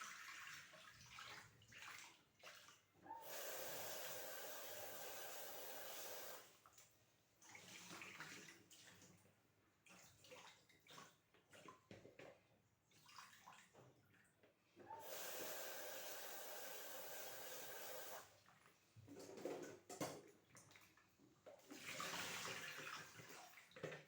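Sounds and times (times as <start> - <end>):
tap water running into bowl: 14.8 - 18.3.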